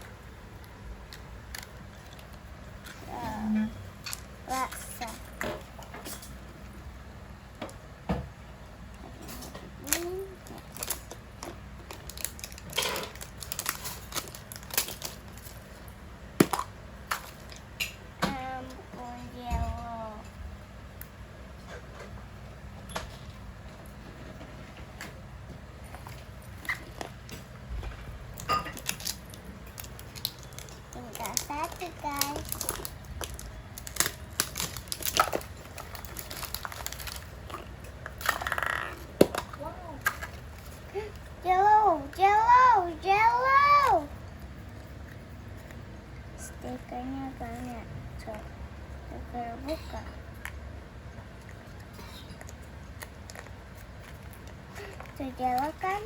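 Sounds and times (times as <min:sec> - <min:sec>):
wrapping crinkling and tearing: 0:09.8 - 0:16.0, 0:28.4 - 0:44.1
plastic packaging crackling: 0:09.8 - 0:17.6, 0:26.0 - 0:44.1.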